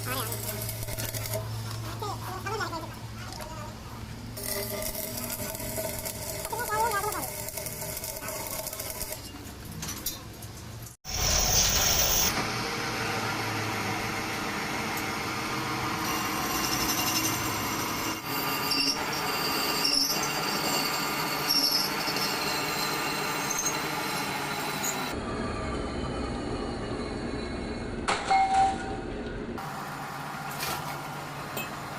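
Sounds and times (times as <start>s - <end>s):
machinery with squealing metallic whine: 11.3s - 29.2s.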